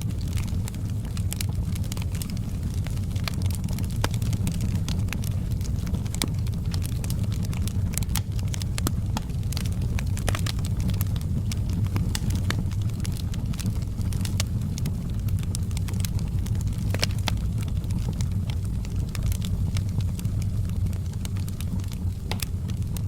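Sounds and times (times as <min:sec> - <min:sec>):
wood fire crackling: 0:00.0 - 0:23.0.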